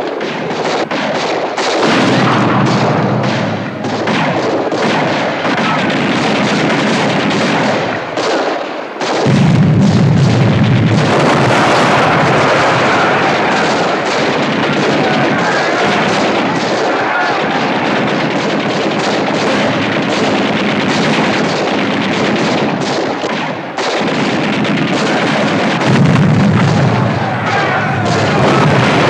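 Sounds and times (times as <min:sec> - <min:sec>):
explosion blasts: 0:00.0 - 0:08.2, 0:09.2 - 0:29.0
rapid gunfire: 0:00.0 - 0:29.0
heavy low rumble: 0:01.8 - 0:04.8, 0:09.3 - 0:16.6.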